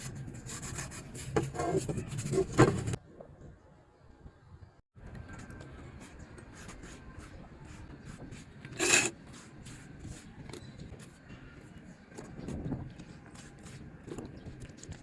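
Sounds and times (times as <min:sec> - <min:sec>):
hand scraping rusty steel blade: 0:08.7 - 0:09.2.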